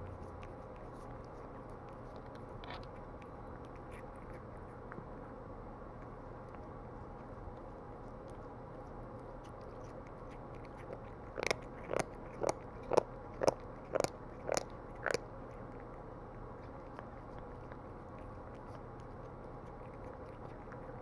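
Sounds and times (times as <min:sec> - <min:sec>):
cat chewing food: 0:00.0 - 0:21.0.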